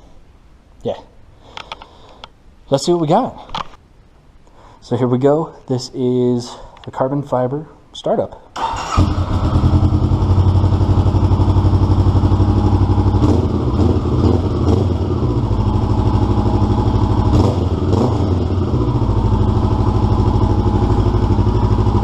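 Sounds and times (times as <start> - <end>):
motorcycle engine idling: 8.7 - 22.0.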